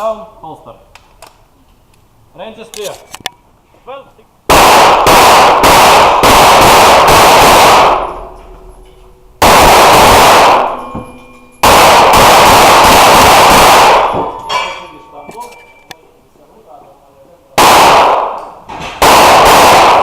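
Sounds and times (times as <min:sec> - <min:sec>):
rapid pistol shots echoing: 0:04.5 - 0:08.4, 0:09.4 - 0:11.0, 0:11.6 - 0:14.4, 0:17.6 - 0:20.0.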